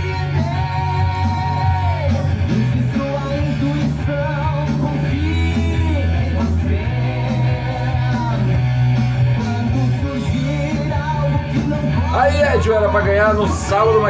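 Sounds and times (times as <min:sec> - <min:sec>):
bass line: 0:00.0 - 0:14.0
electric guitars: 0:00.0 - 0:14.0
man singing: 0:00.0 - 0:14.0
rock song: 0:00.0 - 0:14.0.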